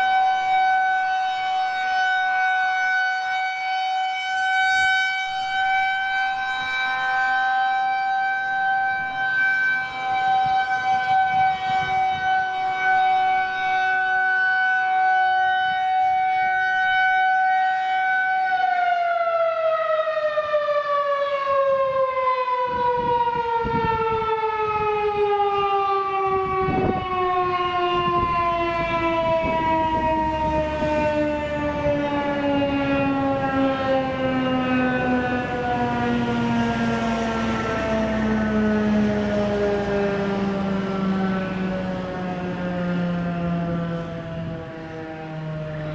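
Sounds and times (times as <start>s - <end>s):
rotating siren winding down: 0.0s - 45.9s.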